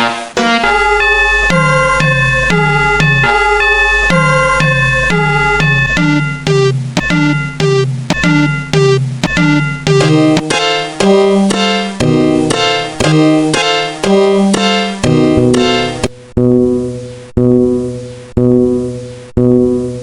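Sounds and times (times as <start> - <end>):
piano-like keyboard tune: 0.4 - 16.1.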